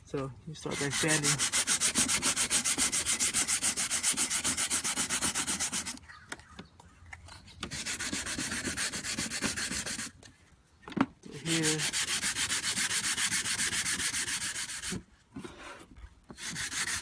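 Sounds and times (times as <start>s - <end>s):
sandpaper rubbing by hand: 0.6s - 6.2s, 7.6s - 10.2s, 11.3s - 15.7s, 16.4s - 17.0s.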